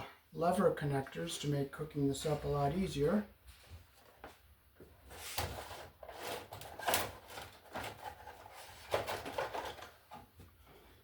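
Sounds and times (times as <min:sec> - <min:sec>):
hands handling plastic parts: 0:05.2 - 0:10.6.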